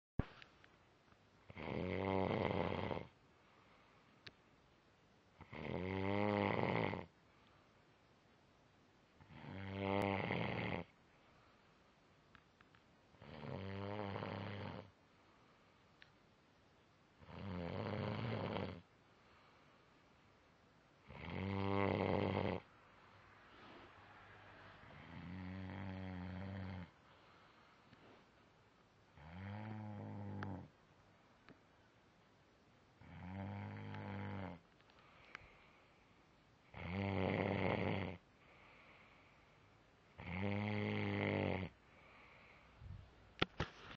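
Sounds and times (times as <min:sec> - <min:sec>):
man snoring: 0:01.5 - 0:03.1, 0:05.4 - 0:07.1, 0:09.3 - 0:10.9, 0:13.2 - 0:14.9, 0:17.2 - 0:18.8, 0:21.1 - 0:22.7, 0:24.9 - 0:26.9, 0:29.2 - 0:30.7, 0:33.0 - 0:34.6, 0:36.7 - 0:38.2, 0:40.2 - 0:41.8.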